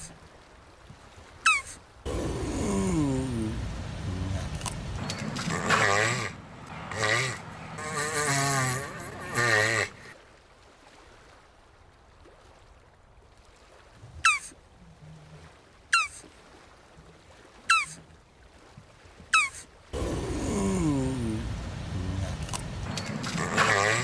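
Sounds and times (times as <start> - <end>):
tortoise groaning: 1.5 - 10.1, 20.0 - 24.0.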